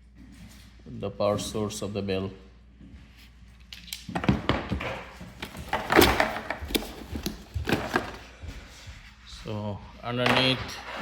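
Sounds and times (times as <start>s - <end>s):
box being handled: 5.3s - 8.2s.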